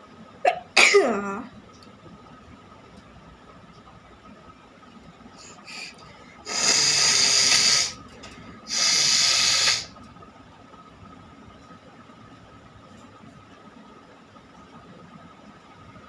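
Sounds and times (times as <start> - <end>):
person blowing nose: 6.5 - 8.0, 8.7 - 9.9.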